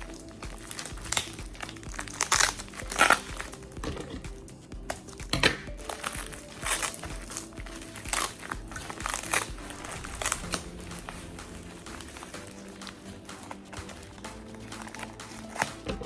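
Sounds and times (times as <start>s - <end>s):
background music: 0.0s - 16.0s.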